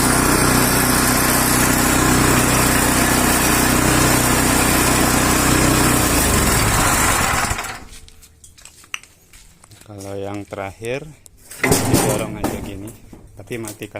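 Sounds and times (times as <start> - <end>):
small engine running: 0.0 - 7.9.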